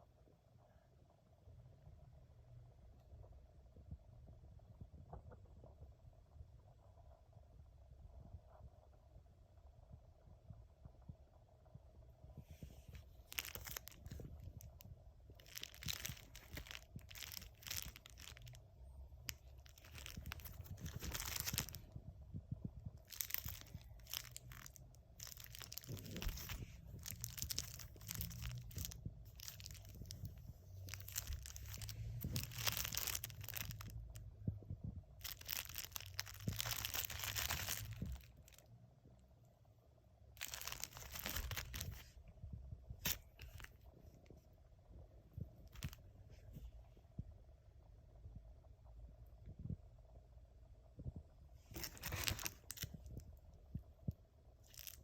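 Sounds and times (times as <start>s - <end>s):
packaging crinkling and rustling: 12.9s - 18.6s, 19.2s - 22.0s, 23.0s - 34.2s, 35.2s - 38.7s, 40.4s - 42.2s, 43.0s - 43.8s, 45.6s - 46.0s, 51.7s - 53.2s, 54.6s - 55.0s.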